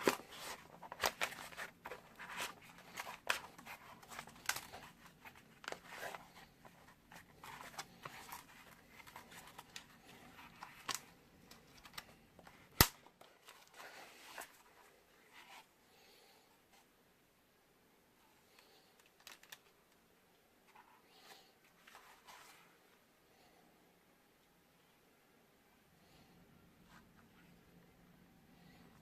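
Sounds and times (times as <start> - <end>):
rustling of holster handling: 0.0 - 15.7, 19.0 - 19.8.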